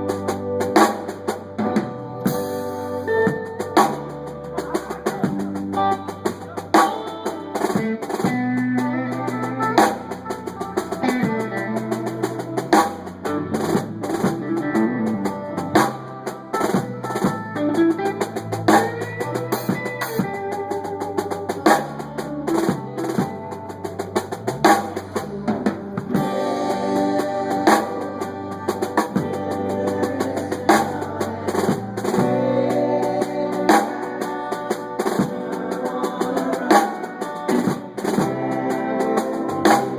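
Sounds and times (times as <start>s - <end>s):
band playing: 0.0s - 39.9s
snare and bass drum hits: 9.8s - 11.2s, 12.7s - 14.4s, 24.4s - 25.2s, 39.5s - 39.9s.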